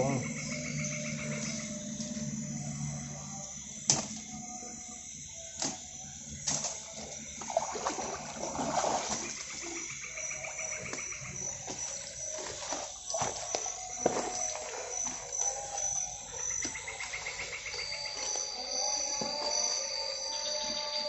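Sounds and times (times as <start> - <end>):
crickets chirping: 0.0 - 21.0
water sloshing from wading: 5.6 - 18.4.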